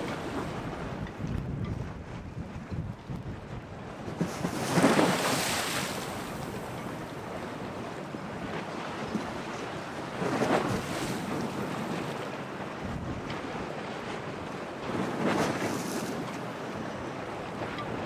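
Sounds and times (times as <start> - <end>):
wind buffeting microphone: 0.0 - 18.0
storm waves surging and splashing: 4.1 - 7.8.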